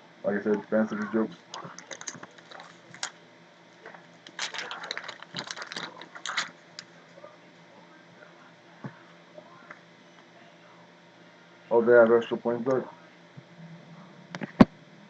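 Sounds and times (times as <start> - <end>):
cards rustling and clicking: 1.0 - 3.2, 4.2 - 6.9.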